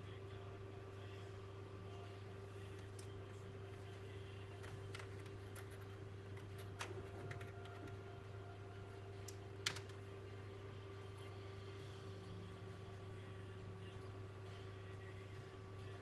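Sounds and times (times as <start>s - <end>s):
steady low hum: 0.0s - 16.0s
computer keys typing: 4.6s - 8.0s.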